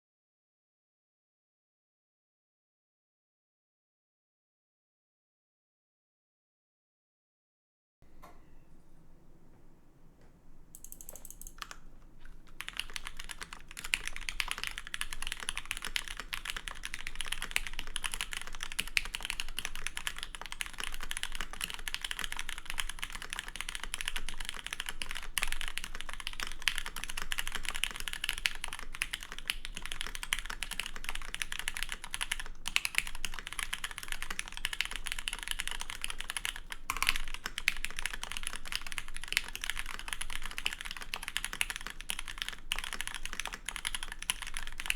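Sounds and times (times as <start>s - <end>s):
fast typing on mechanical keyboard: 10.7s - 44.9s.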